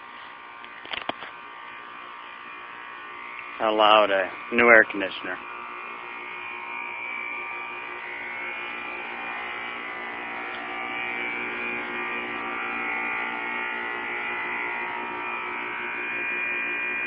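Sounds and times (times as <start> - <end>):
air conditioner humming: 0.0 - 17.0.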